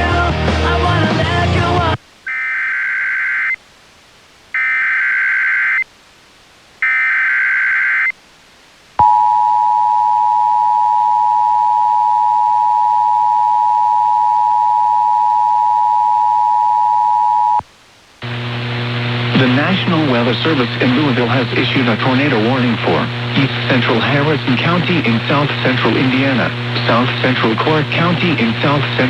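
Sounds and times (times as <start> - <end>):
data bursts: 2.3 - 3.6, 4.6 - 5.9, 6.8 - 8.2
steady dual tone alert: 4.6 - 5.9, 6.8 - 8.2, 9.0 - 17.6.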